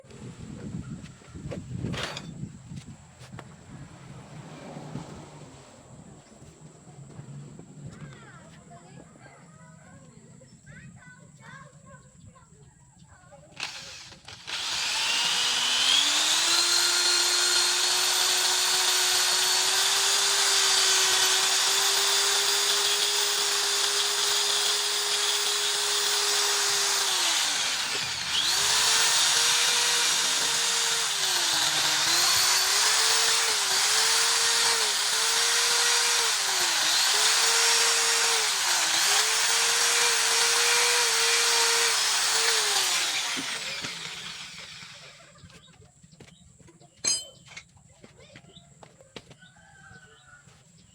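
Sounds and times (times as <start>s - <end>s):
electric power tool running: 13.6s - 45.3s.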